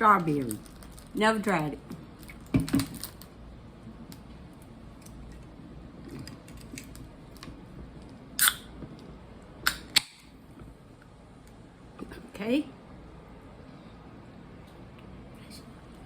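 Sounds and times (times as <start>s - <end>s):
can tab hissing snaps: 8.4s - 8.7s.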